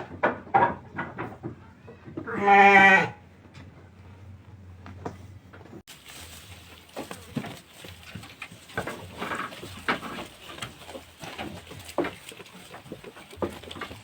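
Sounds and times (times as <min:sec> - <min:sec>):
sheep bleating: 0:02.3 - 0:03.2
faint clicks and rustles: 0:03.4 - 0:14.0.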